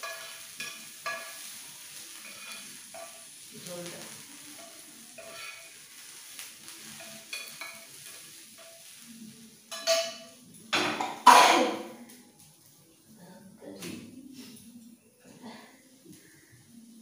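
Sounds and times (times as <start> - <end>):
spatula scraping a wok: 0.0 - 9.1
food sizzling in a wok: 0.0 - 14.8, 15.7 - 17.0.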